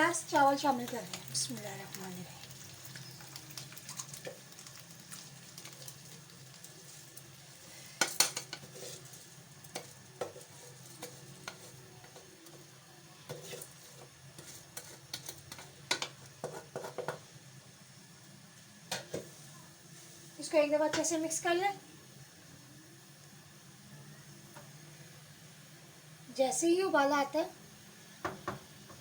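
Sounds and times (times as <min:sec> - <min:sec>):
spoon clinking and scraping pot: 0:08.0 - 0:12.2, 0:13.3 - 0:17.2.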